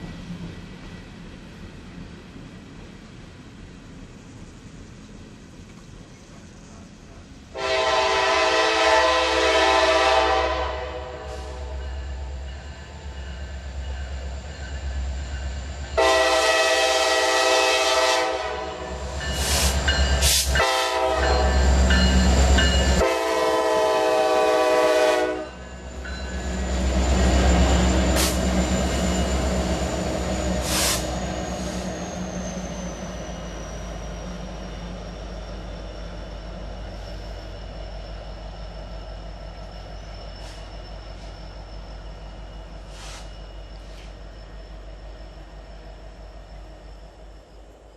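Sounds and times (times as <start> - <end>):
locomotive air horn: 7.5 - 11.8, 16.0 - 19.0, 19.6 - 21.8, 22.9 - 25.6, 30.6 - 31.1.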